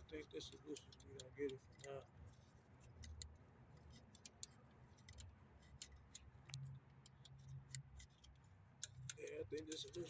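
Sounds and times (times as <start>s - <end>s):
light clicks of hand work: 0.0s - 10.0s.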